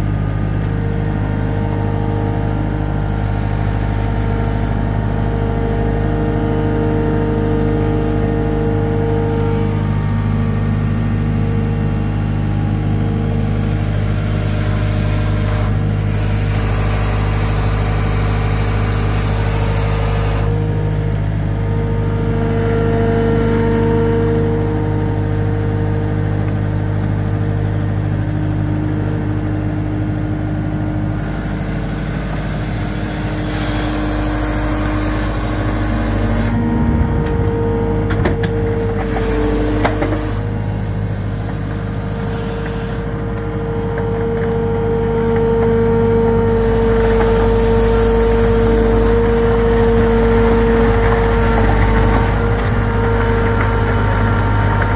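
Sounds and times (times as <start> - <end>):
machine engine running: 0.0 - 22.6, 31.1 - 41.1.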